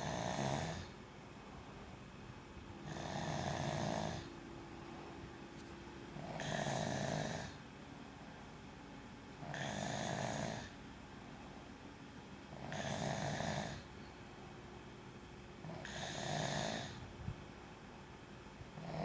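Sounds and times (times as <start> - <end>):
person snoring: 0.0 - 0.9, 2.8 - 4.3, 6.2 - 7.6, 9.5 - 10.7, 12.6 - 13.9, 15.7 - 17.0, 18.8 - 19.0
quiet breathing: 0.0 - 1.8.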